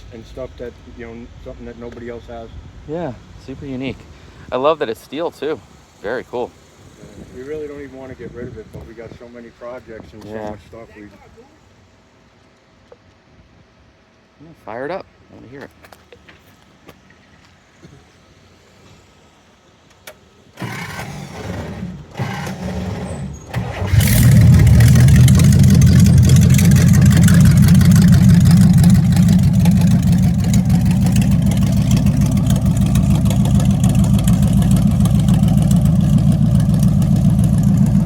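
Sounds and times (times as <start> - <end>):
engine starter cranking: 20.0 - 38.0
engine running loud: 20.6 - 38.0.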